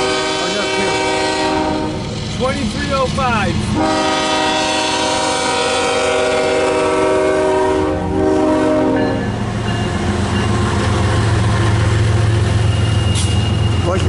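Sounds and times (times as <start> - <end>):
locomotive air horn blasts: 0.0 - 2.0, 3.8 - 9.3
passing train rumble: 0.0 - 14.0.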